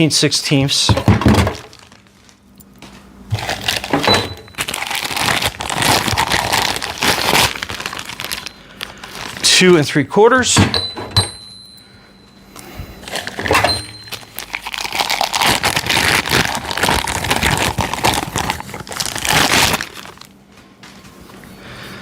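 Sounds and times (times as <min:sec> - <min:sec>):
packaging wrap crinkling: 0:01.3 - 0:02.5, 0:03.2 - 0:09.9, 0:13.0 - 0:20.5.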